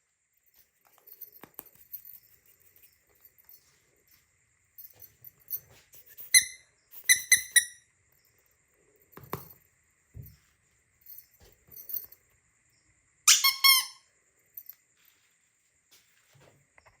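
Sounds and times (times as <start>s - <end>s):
squeaky toy squeaks: 6.3s - 7.8s, 13.3s - 14.0s.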